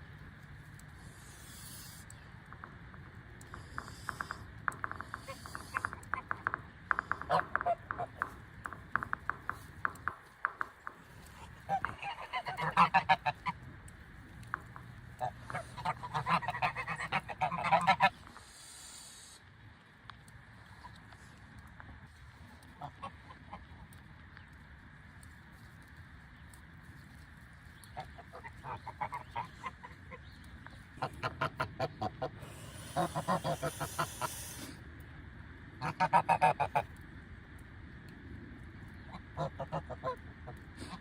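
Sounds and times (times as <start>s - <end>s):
geese honking: 3.4s - 13.8s, 14.5s - 19.0s, 27.9s - 34.8s, 35.8s - 36.9s, 39.1s - 41.0s.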